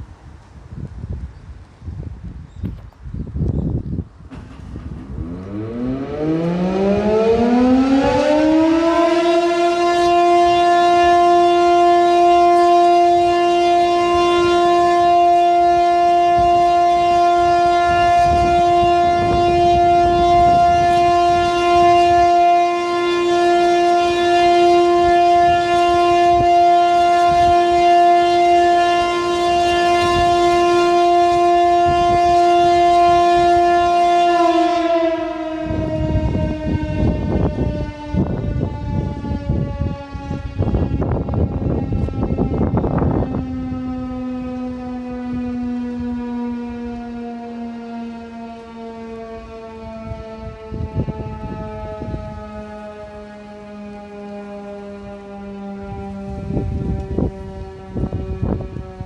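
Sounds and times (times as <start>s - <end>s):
motor siren wailing: 4.3s - 59.0s.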